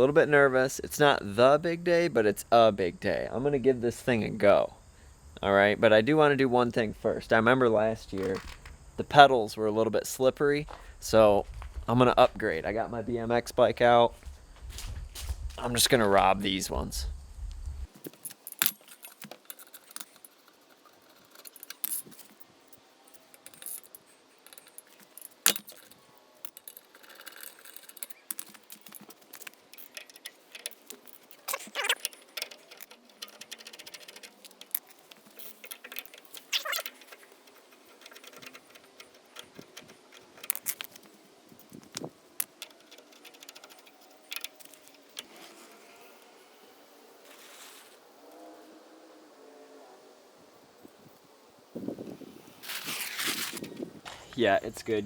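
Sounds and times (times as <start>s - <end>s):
wrench clicking on metal: 23.2s - 45.3s
short squeaks: 26.8s - 41.0s.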